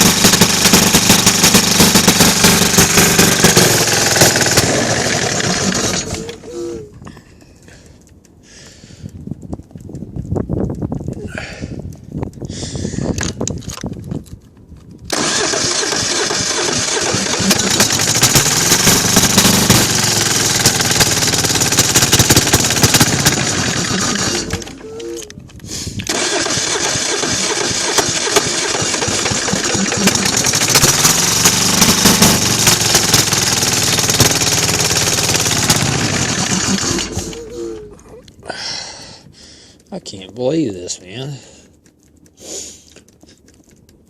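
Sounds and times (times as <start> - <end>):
diesel engine cranking on starter: 0.0 - 6.8, 15.1 - 25.3, 26.0 - 38.0.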